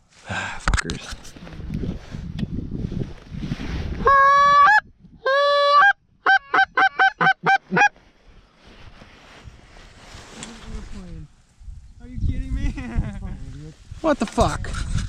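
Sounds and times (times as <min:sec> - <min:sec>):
goose honking: 0:04.1 - 0:07.9.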